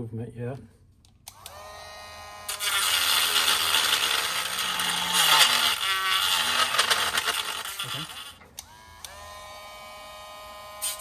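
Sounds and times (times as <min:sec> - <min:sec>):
rotary tool grinding metal: 0:02.4 - 0:11.0.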